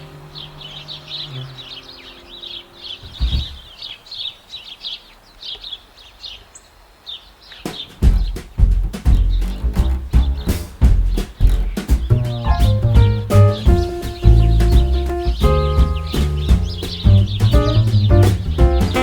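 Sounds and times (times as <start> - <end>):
music: 0.0 - 3.5, 7.9 - 19.0
small birds chirping: 0.0 - 19.0
thumps: 3.0 - 3.8, 8.0 - 19.0.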